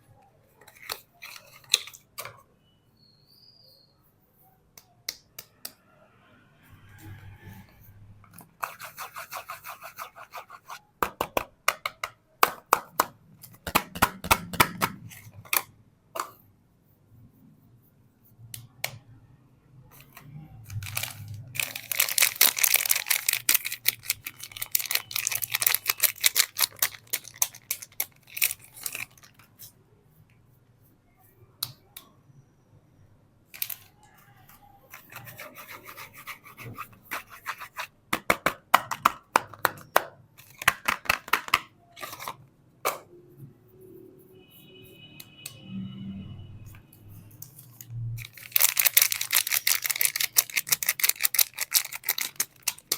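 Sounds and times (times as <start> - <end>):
wrapper crinkling and tearing: 20.7 - 29.4, 48.2 - 52.9.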